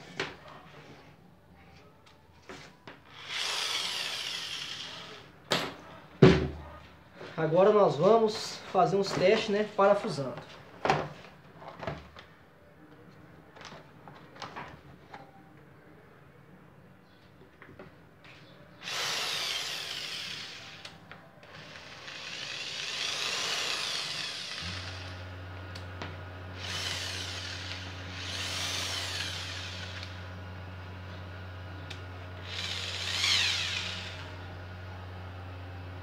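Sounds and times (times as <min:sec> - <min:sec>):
drill motor whining: 0:03.1 - 0:05.3, 0:18.8 - 0:30.2, 0:31.9 - 0:34.8.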